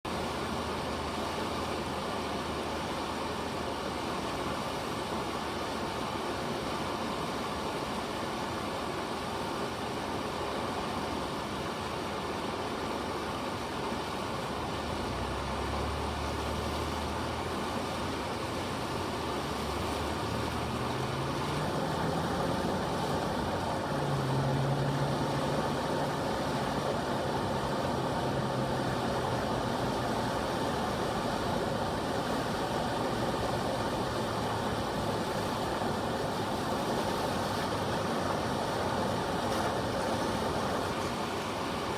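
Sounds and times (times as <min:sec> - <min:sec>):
river water rushing: 0:00.1 - 0:41.9
low engine-like hum: 0:14.0 - 0:41.9.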